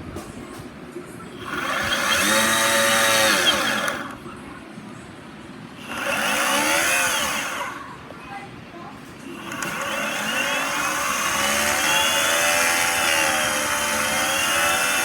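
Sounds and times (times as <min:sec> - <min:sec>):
electric motor whine rising and falling: 0:01.4 - 0:04.2, 0:05.8 - 0:07.8, 0:09.3 - 0:15.0.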